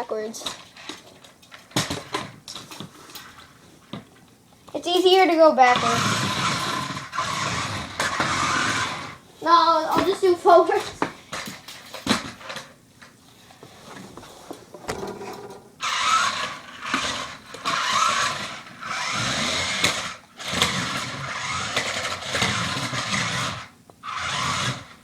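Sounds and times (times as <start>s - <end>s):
toy car motor whirring: 5.6s - 9.2s, 15.8s - 25.0s.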